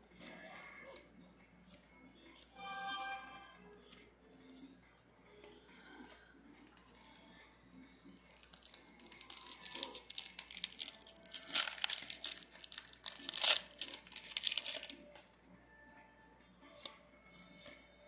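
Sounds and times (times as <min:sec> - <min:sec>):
foil wrapper crinkling and tearing: 0:08.4 - 0:15.1.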